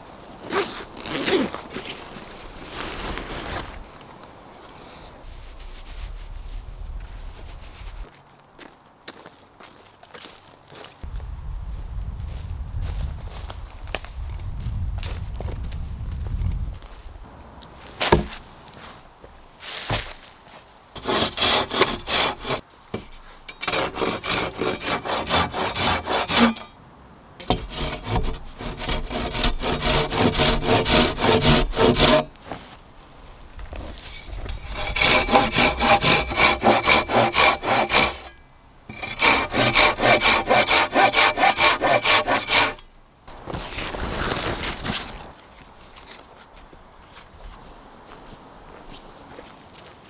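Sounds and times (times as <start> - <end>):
hand saw cutting wood: 18.0 - 18.5, 21.0 - 26.8, 27.4 - 32.7, 33.7 - 42.9.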